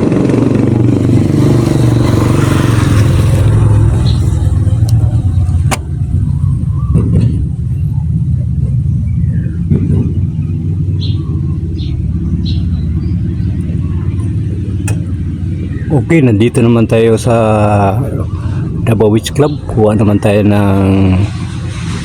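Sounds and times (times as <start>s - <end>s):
road noise rushing: 0.0s - 22.0s
vehicle engine rumbling: 0.0s - 22.0s.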